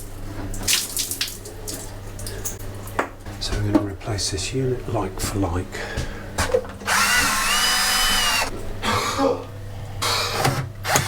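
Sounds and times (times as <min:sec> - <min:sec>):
power drill motor whine: 0:06.9 - 0:08.5, 0:10.0 - 0:11.0.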